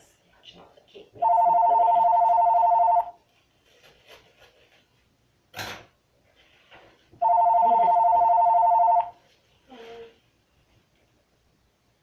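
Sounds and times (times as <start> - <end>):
telephone ringing: 1.2 - 3.2, 7.2 - 9.2
rustling noise: 3.2 - 5.2, 6.2 - 7.2, 9.1 - 11.4.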